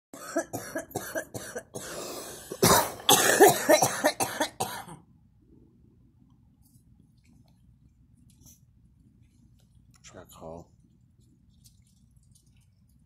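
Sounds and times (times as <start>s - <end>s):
girl coughing: 0.2s - 5.0s.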